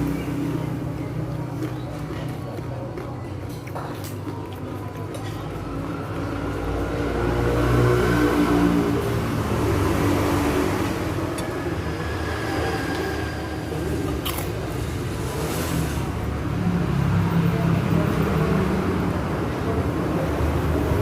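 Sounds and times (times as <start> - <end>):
road traffic rumble: 0.0 - 21.0.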